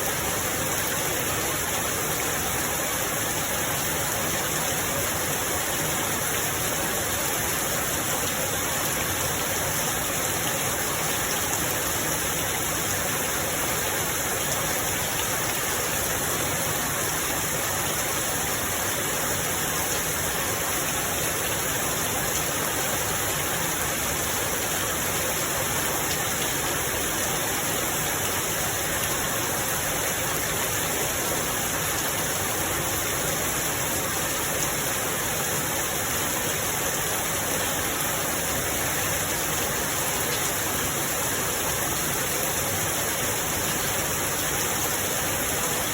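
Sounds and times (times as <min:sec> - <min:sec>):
steady rain falling: 0:00.0 - 0:45.9.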